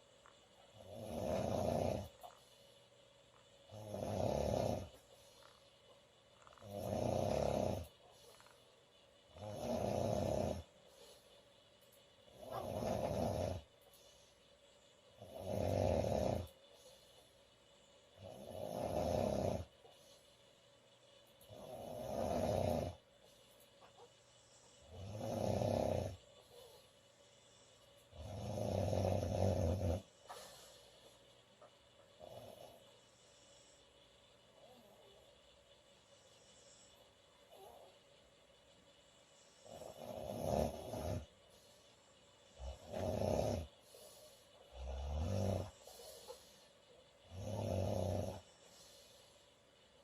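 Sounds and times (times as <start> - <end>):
quiet breathing: 0.0 - 50.0
woman snoring: 0.8 - 2.2, 3.7 - 5.0, 6.5 - 7.9, 9.3 - 10.7, 12.4 - 13.7, 15.2 - 16.5, 18.2 - 19.7, 21.5 - 23.0, 24.8 - 26.2, 28.2 - 30.1, 39.6 - 41.3, 42.6 - 43.8, 44.7 - 46.3, 47.3 - 48.5.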